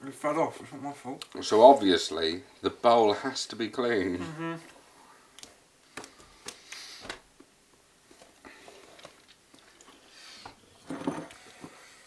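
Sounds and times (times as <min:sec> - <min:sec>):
person chewing food: 0:08.1 - 0:10.2.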